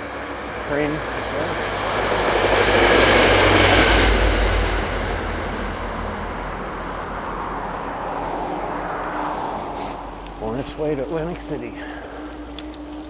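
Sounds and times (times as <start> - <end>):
train passing by: 0.0 - 13.0.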